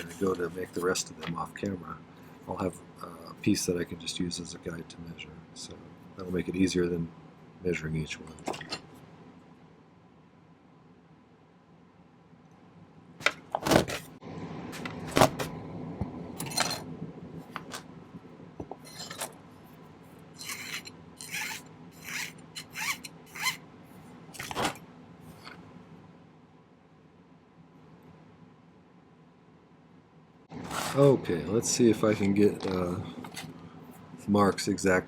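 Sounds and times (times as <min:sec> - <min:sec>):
hand file scraping metal wire: 0:20.4 - 0:23.6.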